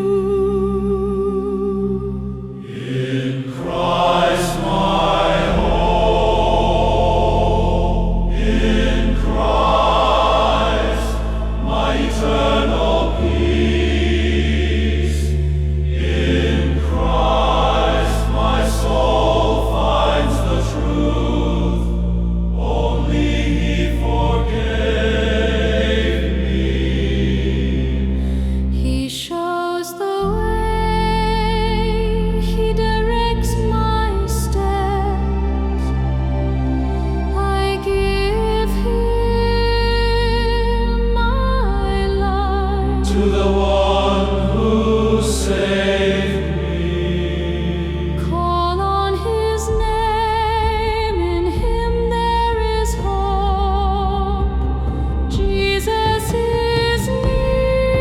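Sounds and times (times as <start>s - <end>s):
choir singing sustained chords: 0.0s - 58.0s
deep held bass note: 3.6s - 25.1s.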